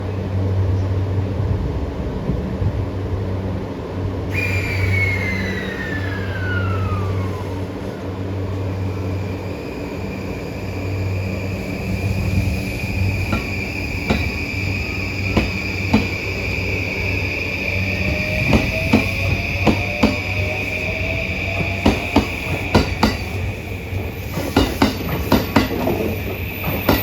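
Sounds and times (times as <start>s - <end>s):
electric train hum: 0.0s - 27.0s
high motor whine: 4.3s - 24.4s
wheels clacking over rail joints: 12.3s - 16.4s, 21.5s - 27.0s.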